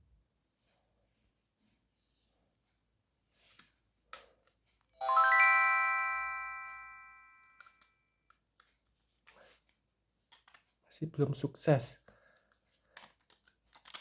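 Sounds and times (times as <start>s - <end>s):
phone power-on melody: 5.0s - 7.7s.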